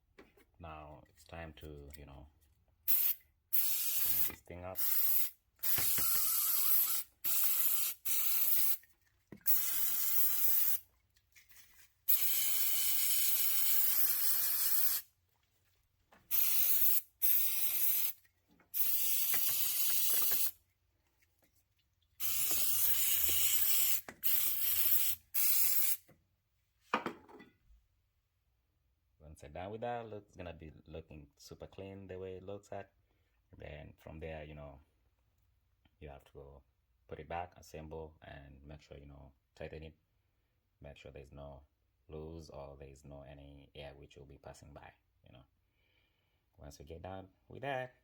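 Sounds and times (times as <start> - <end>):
aerosol spray hissing: 2.9 - 8.8, 9.4 - 10.8, 12.1 - 15.0, 16.3 - 20.6, 22.2 - 26.0.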